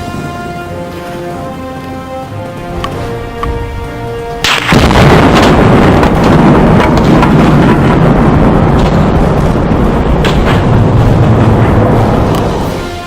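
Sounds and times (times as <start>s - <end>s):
heavy rumble with sharp cracks: 0.0s - 13.0s
music: 0.0s - 13.0s
explosion blast: 4.4s - 13.0s.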